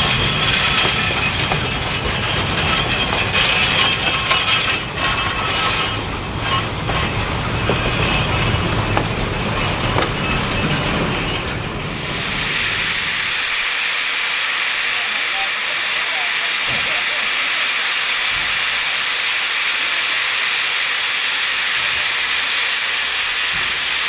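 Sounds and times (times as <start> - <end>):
steam hissing: 0.0 - 24.0
train wheels clattering on track: 0.0 - 24.0.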